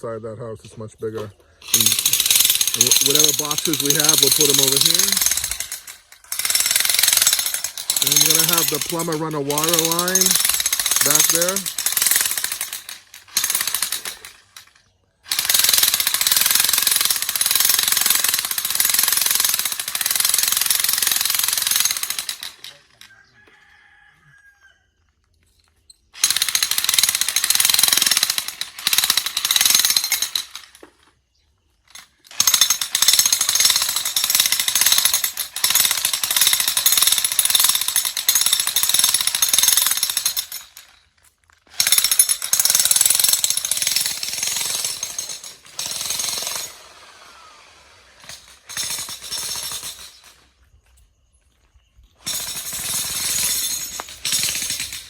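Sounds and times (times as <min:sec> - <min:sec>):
jackhammer breaking rock: 0:01.6 - 0:23.0, 0:31.9 - 0:41.0, 0:41.7 - 0:47.3, 0:48.2 - 0:50.4, 0:52.2 - 0:55.0.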